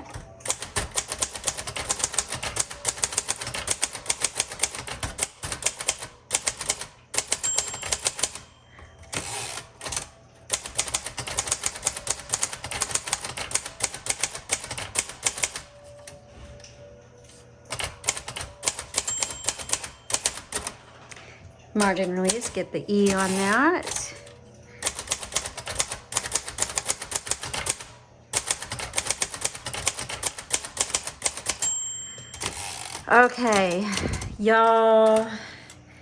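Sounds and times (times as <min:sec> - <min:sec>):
typewriter typing: 0:00.0 - 0:16.2, 0:17.6 - 0:34.4
typewriter bell ding: 0:05.5 - 0:15.7, 0:17.7 - 0:20.8, 0:28.4 - 0:33.8.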